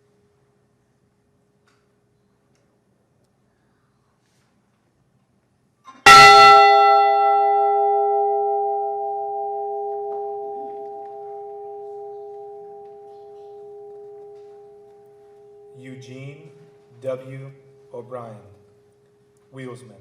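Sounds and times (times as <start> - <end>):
large bell tolling: 6.0 - 17.8.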